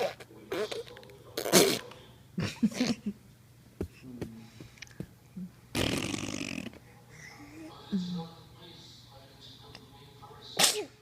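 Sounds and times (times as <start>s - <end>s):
person sneezing: 10.6s - 11.0s.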